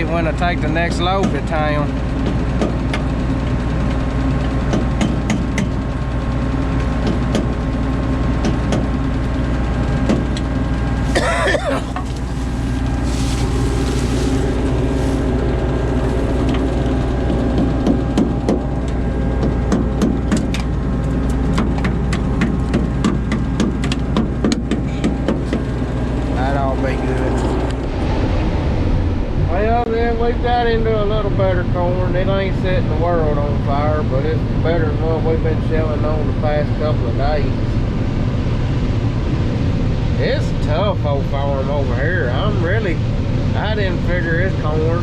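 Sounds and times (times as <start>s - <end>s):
combine harvester engine drone: 0.0s - 45.0s.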